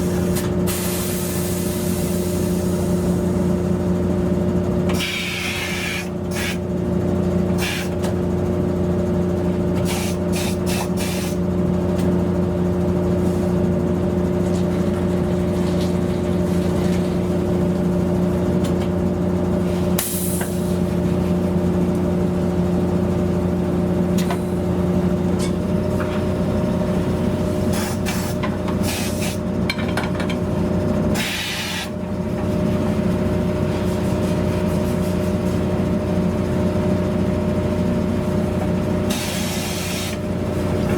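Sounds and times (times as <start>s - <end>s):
compressed air hissing: 0.1s - 2.8s, 5.0s - 6.6s, 7.6s - 7.9s, 9.8s - 11.4s, 27.7s - 29.4s, 31.2s - 32.0s, 39.1s - 40.2s
machine hum: 11.5s - 28.8s, 31.9s - 40.9s.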